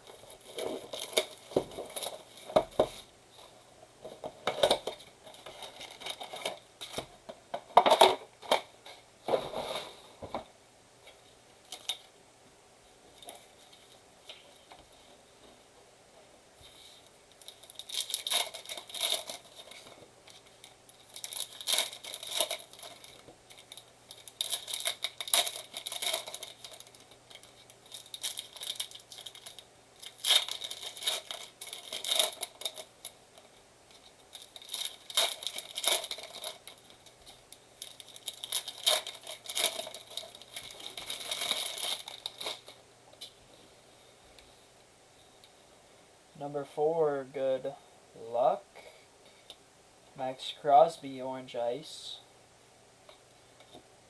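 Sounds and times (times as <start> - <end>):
plastic wrappers tearing and crinkling: 0.0 - 3.1, 4.4 - 7.0, 17.3 - 43.3.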